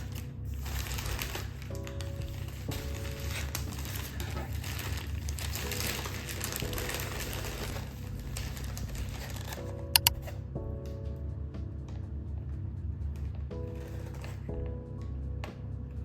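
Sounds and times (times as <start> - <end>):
packaging crinkling and rustling: 0.0 - 10.4, 13.6 - 14.7.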